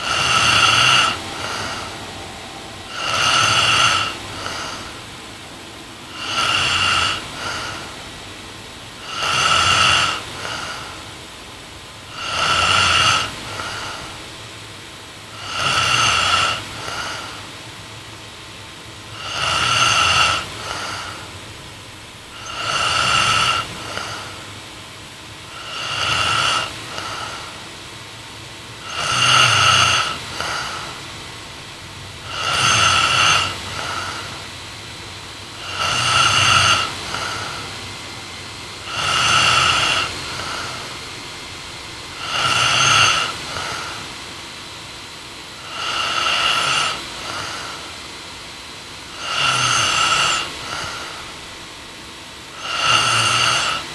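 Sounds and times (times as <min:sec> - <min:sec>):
woman snoring: 0:00.0 - 0:11.3, 0:12.0 - 0:14.6, 0:15.2 - 0:17.7, 0:19.1 - 0:27.9, 0:28.7 - 0:44.3, 0:45.4 - 0:48.0, 0:49.0 - 0:53.9.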